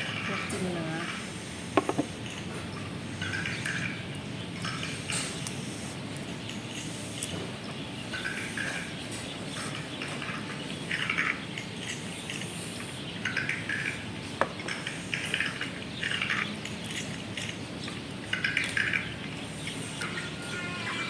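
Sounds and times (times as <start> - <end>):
slurping noodles: 0.0 - 4.0.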